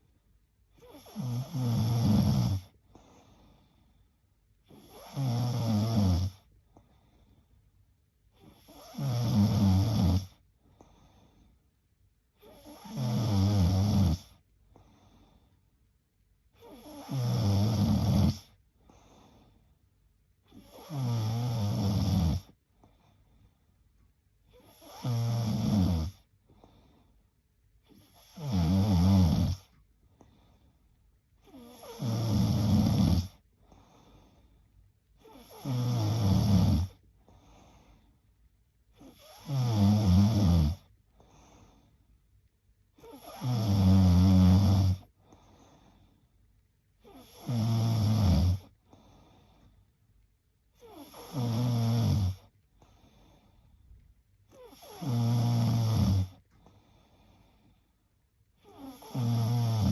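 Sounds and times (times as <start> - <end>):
woman snoring: 0.8 - 2.8, 4.7 - 6.5, 8.4 - 10.4, 12.4 - 14.3, 16.6 - 18.6, 20.5 - 22.6, 24.5 - 26.3, 27.9 - 29.7, 31.4 - 33.4, 35.2 - 37.0, 39.0 - 40.9, 43.0 - 45.1, 47.0 - 48.8, 50.8 - 52.5, 54.5 - 56.5, 58.6 - 59.9
faint breaths: 2.6 - 5.2, 6.3 - 9.1, 10.2 - 13.0, 14.2 - 17.2, 18.4 - 21.2, 22.4 - 25.1, 26.1 - 28.5, 29.5 - 35.8, 36.8 - 39.6, 40.7 - 43.6, 44.9 - 47.7, 48.6 - 59.9.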